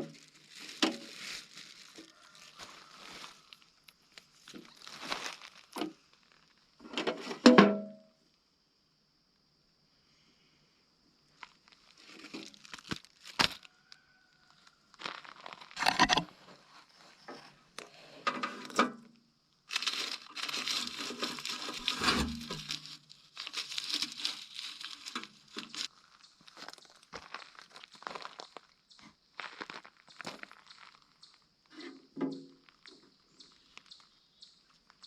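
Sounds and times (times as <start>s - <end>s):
packaging crinkling and tearing: 0.0s - 3.6s, 4.2s - 6.5s, 11.7s - 13.7s, 19.7s - 28.4s.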